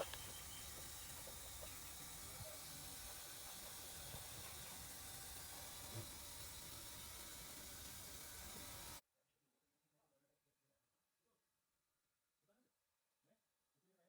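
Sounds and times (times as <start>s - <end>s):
misfiring car engine: 0.0s - 9.0s.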